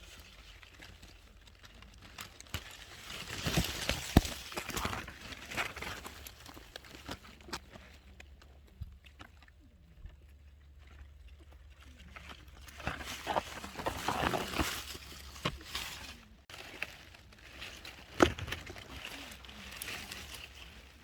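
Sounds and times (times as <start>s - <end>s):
rustling and crackling: 0.0s - 21.0s.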